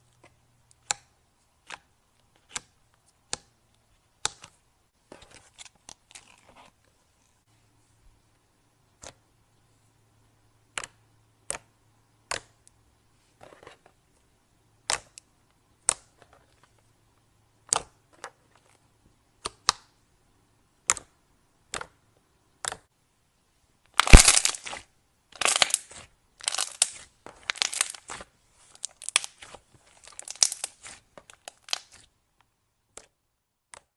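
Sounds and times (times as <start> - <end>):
slime crackling and crunching: 23.9 - 32.0.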